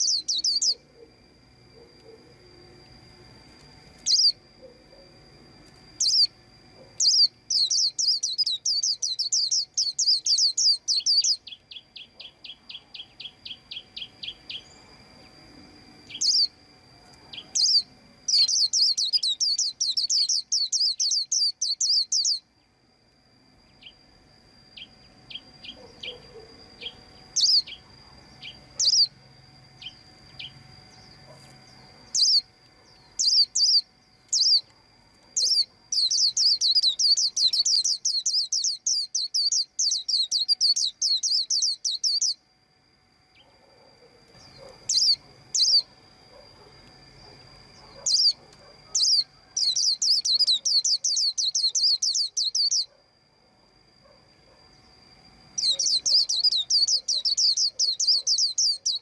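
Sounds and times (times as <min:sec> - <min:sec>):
white-eye bird chirping: 0:00.0 - 0:01.2, 0:03.9 - 0:05.2, 0:06.0 - 0:15.3, 0:16.0 - 0:22.6, 0:24.8 - 0:29.2, 0:29.8 - 0:34.7, 0:35.3 - 0:42.5, 0:44.2 - 0:53.0, 0:55.5 - 0:59.0.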